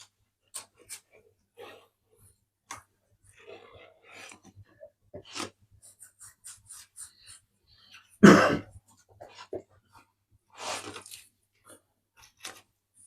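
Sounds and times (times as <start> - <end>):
person coughing: 8.2 - 8.7.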